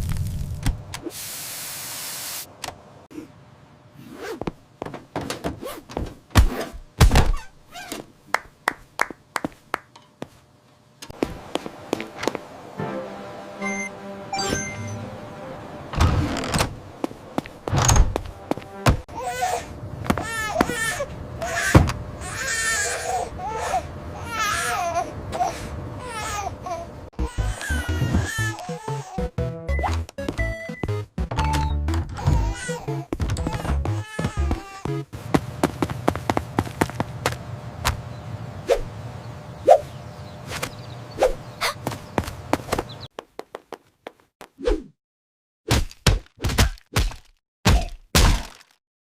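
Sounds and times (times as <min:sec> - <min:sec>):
baby crying: 0:19.1 - 0:29.3, 0:32.2 - 0:35.1.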